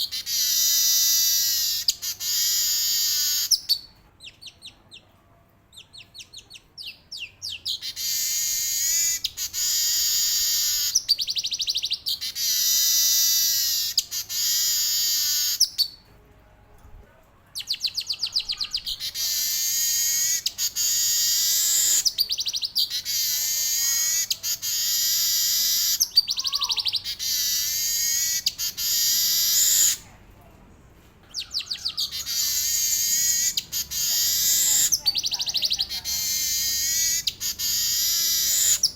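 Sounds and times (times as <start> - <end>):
weaver bird singing: 0.0 - 5.0, 5.7 - 16.0, 17.6 - 30.0, 31.3 - 38.9.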